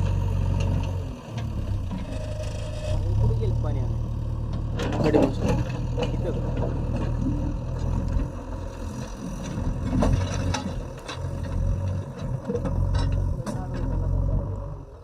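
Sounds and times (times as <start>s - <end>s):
diesel engine drone: 0.0s - 15.0s
sharp knocks and clatter: 4.6s - 8.3s, 9.5s - 14.0s.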